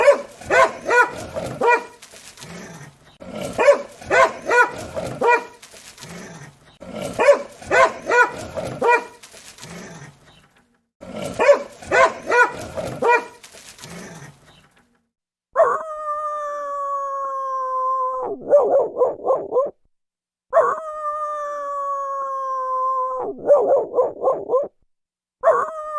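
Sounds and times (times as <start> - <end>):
dog howling: 0.0 - 2.6
dog barking angrily: 0.0 - 10.2, 11.0 - 14.5, 18.4 - 19.7, 23.4 - 24.7
dog growling: 0.0 - 10.4, 11.0 - 14.6.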